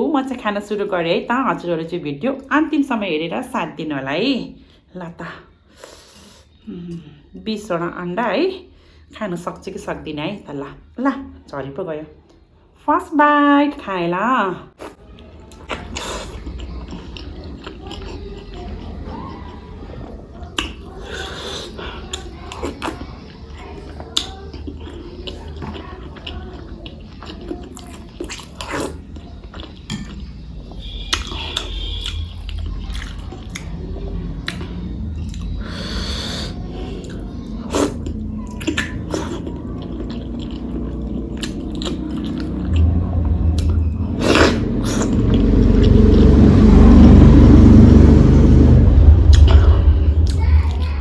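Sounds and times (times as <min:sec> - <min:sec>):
low background hum: 0:00.0 - 0:51.0
person chewing wetly: 0:14.8 - 0:46.0
sharp mouth clicks: 0:31.1 - 0:33.7.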